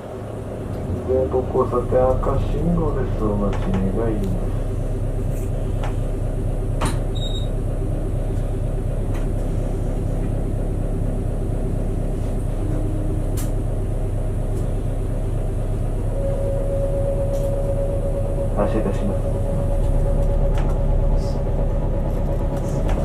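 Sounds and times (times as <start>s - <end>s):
bus engine idling: 0.0s - 23.0s
steady high tone: 15.4s - 22.0s.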